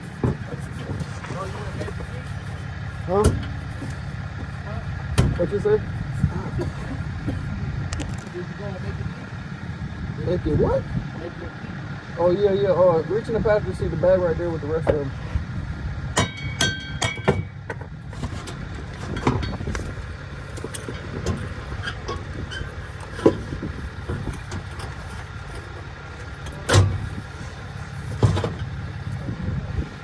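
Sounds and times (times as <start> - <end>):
steady low rumble: 0.0 - 30.0
metal knocks and clinks: 16.2 - 29.2.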